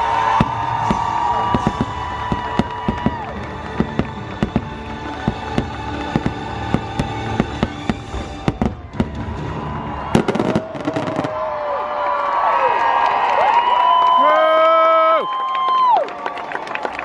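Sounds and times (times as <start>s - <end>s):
music: 0.0s - 11.2s
fireworks bangs: 0.0s - 11.6s.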